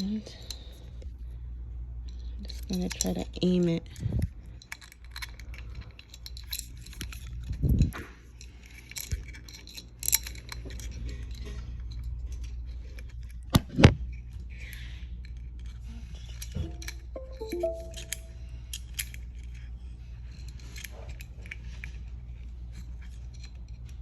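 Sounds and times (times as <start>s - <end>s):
light metallic clicks and scrapes: 19.0s - 24.0s.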